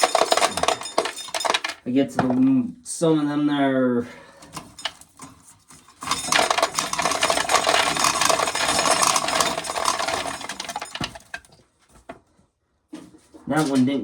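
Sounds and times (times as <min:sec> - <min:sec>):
corn kernels rattling: 0:00.0 - 0:01.9, 0:04.6 - 0:11.5.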